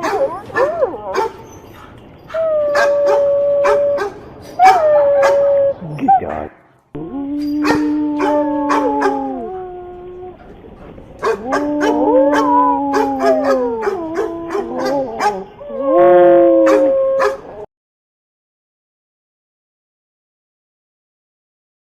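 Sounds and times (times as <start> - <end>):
dog howling: 0.0 - 10.5, 11.2 - 17.7.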